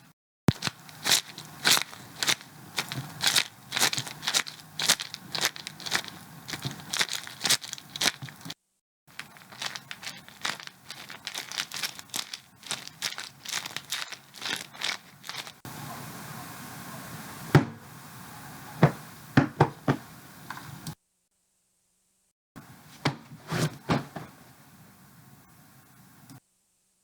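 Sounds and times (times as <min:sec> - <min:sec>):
crunching crackling foley strokes: 0:00.5 - 0:15.6.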